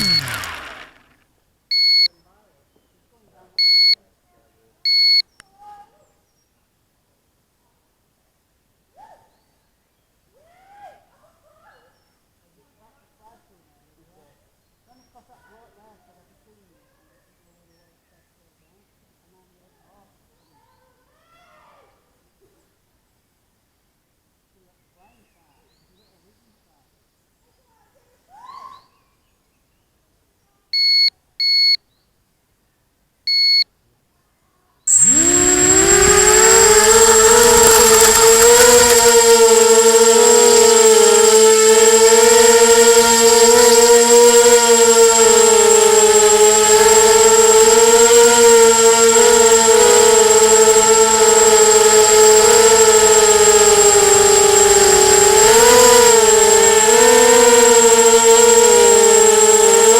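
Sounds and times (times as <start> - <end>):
drone motors whining: 0.0 - 1.2, 34.9 - 59.9
short electronic beeps: 33.3 - 33.6
thin high tone: 34.9 - 59.9.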